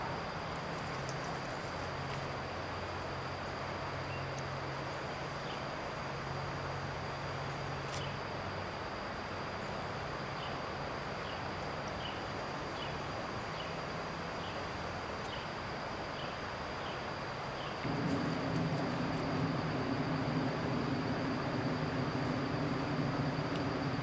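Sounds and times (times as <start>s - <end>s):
constant high whine: 0.0s - 24.0s
steady hiss: 0.0s - 24.0s
passing vehicle rumble: 17.8s - 24.0s.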